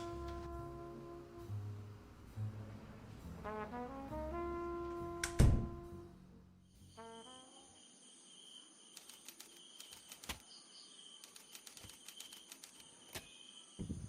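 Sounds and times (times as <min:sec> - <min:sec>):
insects chirping: 0:06.6 - 0:14.0.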